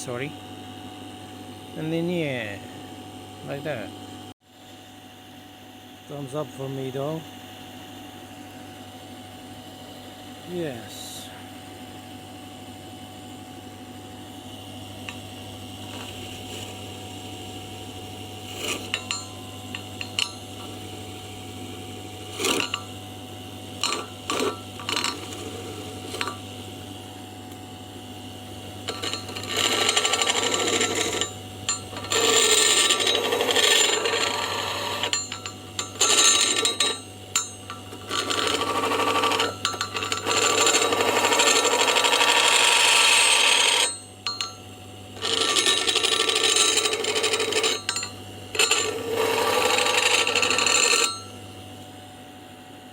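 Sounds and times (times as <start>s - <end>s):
tool cutting spinning workpiece: 15.0s - 27.1s, 28.4s - 51.4s
lathe motor hum: 15.0s - 51.3s.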